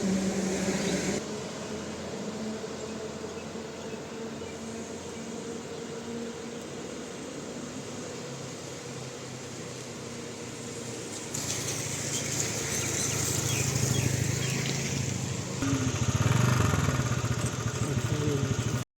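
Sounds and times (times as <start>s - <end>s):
vehicle engine running: 0.0s - 1.2s, 11.4s - 18.9s.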